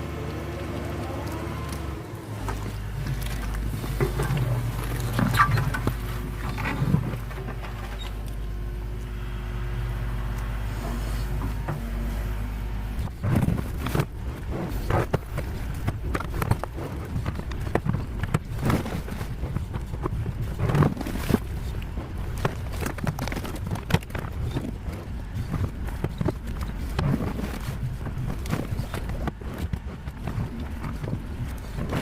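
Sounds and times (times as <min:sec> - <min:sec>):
diesel engine running: 0:00.0 - 0:32.0
bucket knocking and scraping: 0:03.0 - 0:08.0.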